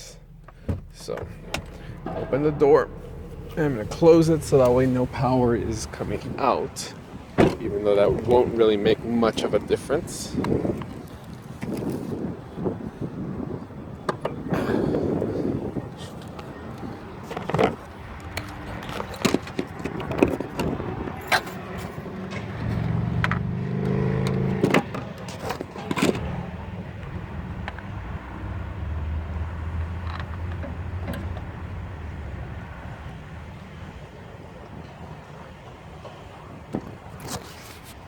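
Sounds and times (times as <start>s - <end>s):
low hum: 0.0s - 6.5s
clicks knocks and thuds: 0.4s - 4.8s.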